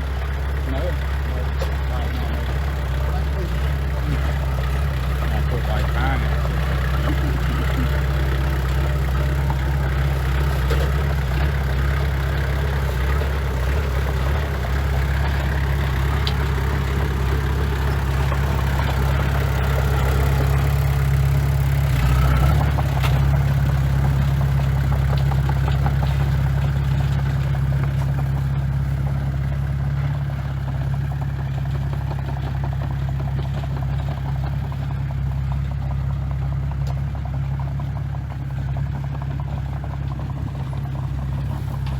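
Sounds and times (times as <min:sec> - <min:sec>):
diesel engine running: 0:00.0 - 0:41.9
clatter: 0:08.6 - 0:41.9.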